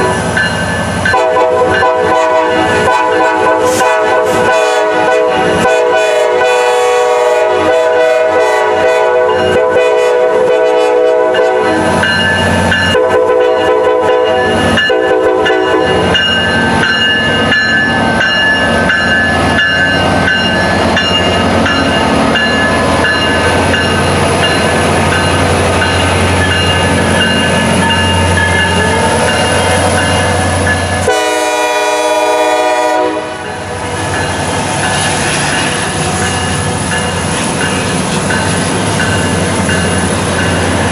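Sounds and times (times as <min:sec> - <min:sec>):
freight train rumbling: 0:00.0 - 0:40.9
locomotive air horn chord: 0:01.1 - 0:11.9, 0:12.9 - 0:15.8, 0:31.0 - 0:33.8.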